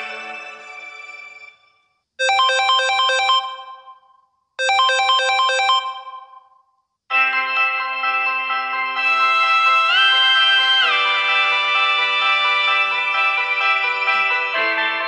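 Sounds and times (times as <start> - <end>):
phone ringtone chiming notes: 2.2 - 12.0.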